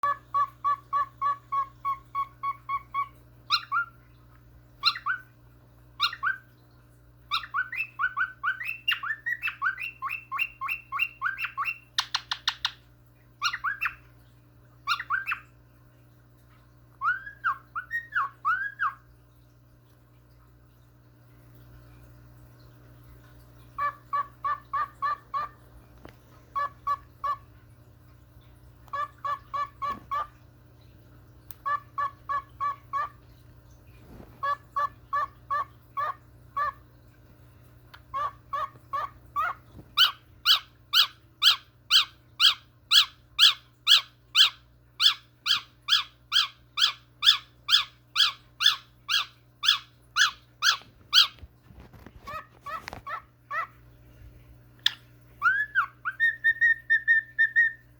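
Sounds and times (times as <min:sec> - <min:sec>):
cockatiel begging chirps: 0:00.0 - 0:04.0, 0:04.8 - 0:05.3, 0:06.0 - 0:06.4, 0:07.3 - 0:12.7, 0:13.4 - 0:14.0, 0:14.9 - 0:15.5, 0:38.1 - 0:51.4, 0:54.8 - 0:57.8.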